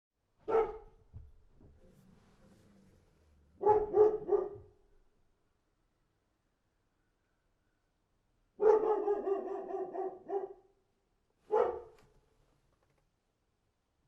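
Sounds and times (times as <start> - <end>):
dog barking: 0.4 - 1.1, 3.6 - 4.8, 8.6 - 10.8, 11.5 - 12.0.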